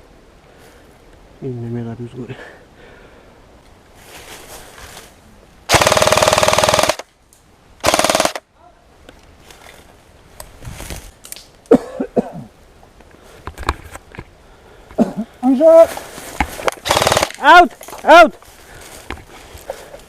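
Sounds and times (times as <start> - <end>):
airsoft rifle full-auto bursts: 5.7 - 7.1, 7.8 - 8.4, 16.8 - 17.6.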